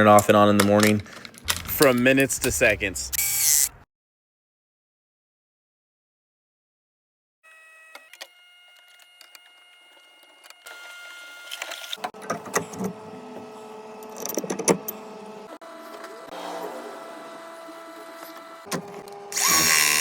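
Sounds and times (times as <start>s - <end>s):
tools clicking and knocking: 0.1s - 2.6s
small electric motor whining: 3.2s - 3.8s, 7.5s - 12.1s, 17.2s - 20.0s.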